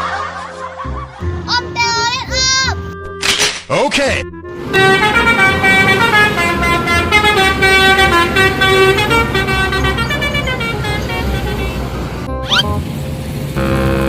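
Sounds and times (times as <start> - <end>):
multi-tone bus horn melody: 4.3 - 12.9, 13.6 - 14.0
bus engine running: 4.5 - 14.0.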